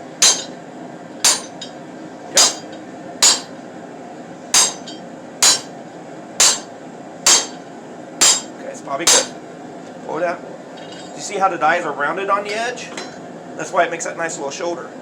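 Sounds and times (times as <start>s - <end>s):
hammer striking metal die: 0.2s - 0.6s, 1.2s - 1.7s, 2.4s - 3.5s, 4.6s - 5.7s, 6.4s - 6.7s, 7.3s - 7.6s, 8.2s - 8.5s, 9.1s - 9.3s.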